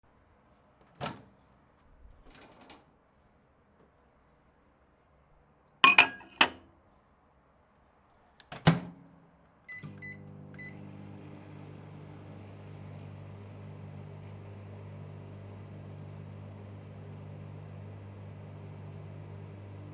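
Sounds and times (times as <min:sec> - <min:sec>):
short keypad beeps: 0:09.7 - 0:10.8
microwave oven humming: 0:09.7 - 0:19.9.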